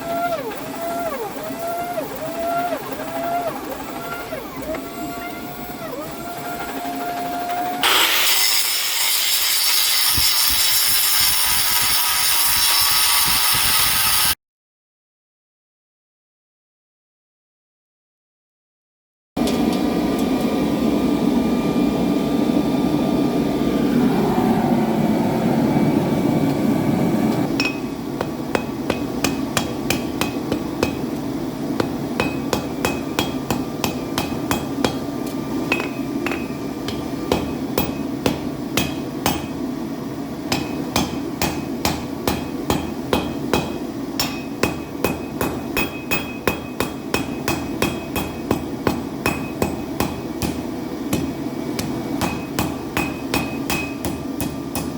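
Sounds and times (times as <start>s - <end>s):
steady rushing noise: 20.6s - 42.4s
hammer striking steel on anvil: 27.6s - 31.2s, 31.8s - 35.1s, 35.7s - 39.6s, 40.5s - 54.9s.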